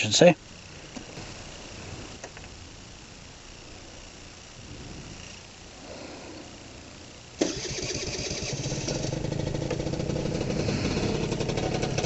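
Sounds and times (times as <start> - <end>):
electric starter cranking: 7.4 - 12.0
scooter engine idling: 7.4 - 12.0.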